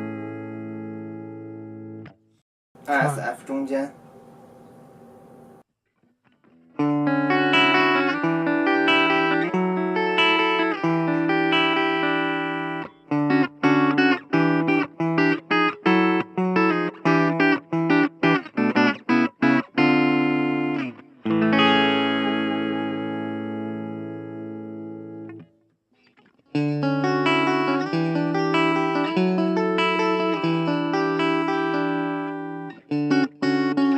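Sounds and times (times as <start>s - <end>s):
electric guitar strumming chords: 0.0s - 2.2s, 6.4s - 25.5s, 26.5s - 33.9s.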